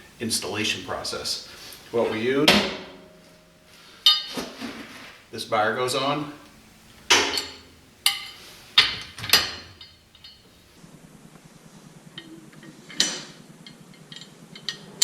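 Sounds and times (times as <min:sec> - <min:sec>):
steel bar clanking on metal: 0:00.0 - 0:05.0, 0:06.0 - 0:10.8, 0:12.2 - 0:15.0
light metal clinks: 0:00.0 - 0:05.3, 0:06.3 - 0:10.8.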